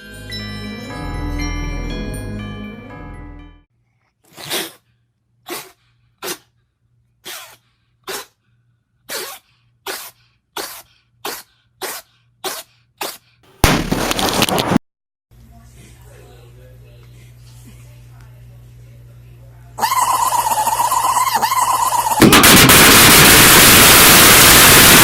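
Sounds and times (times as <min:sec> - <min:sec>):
short sneezes: 0:04.3 - 0:04.9, 0:05.5 - 0:06.5, 0:07.2 - 0:08.4, 0:09.1 - 0:13.4
loud burst of noise: 0:13.6 - 0:14.8, 0:21.8 - 0:25.0.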